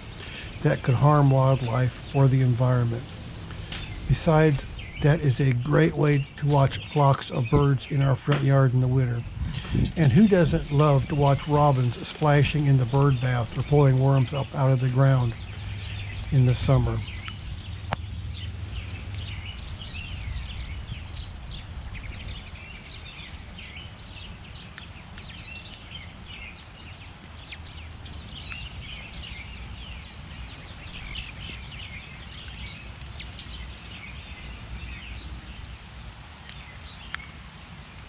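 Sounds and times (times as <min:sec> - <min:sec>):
steady low rumble: 0:00.0 - 0:24.0
small songbirds chirping: 0:00.0 - 0:38.0.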